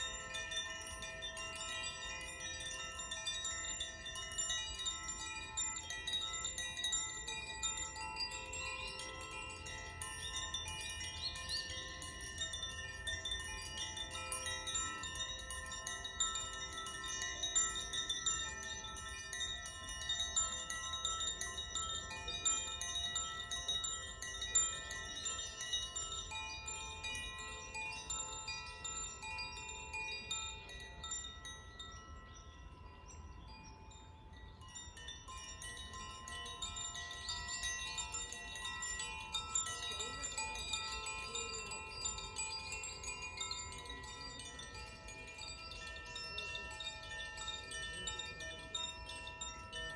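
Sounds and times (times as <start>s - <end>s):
wind chimes ringing: 0.0s - 49.9s.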